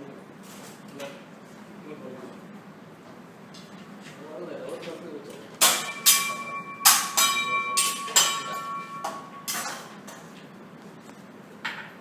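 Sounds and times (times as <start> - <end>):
metal kitchenware clanking: 5.6 - 10.2.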